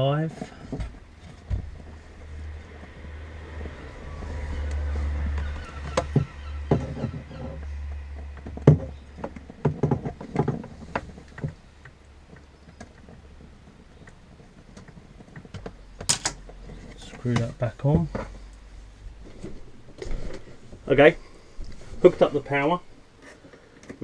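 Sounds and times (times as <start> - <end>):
low rumble: 1.6 - 9.2
clicks of wires being fixed: 14.0 - 18.6.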